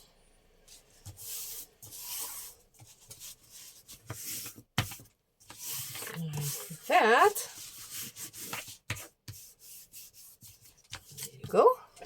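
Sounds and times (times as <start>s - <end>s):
paper rustling on a table: 0.7s - 11.6s.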